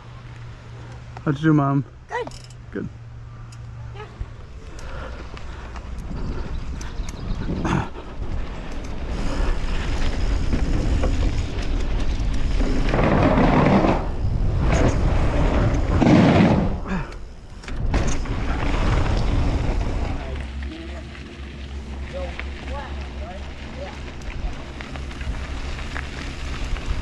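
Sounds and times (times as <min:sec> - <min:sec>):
mountain bike on dirt trail: 0:00.0 - 0:27.0
wind buffeting microphone: 0:04.1 - 0:20.4.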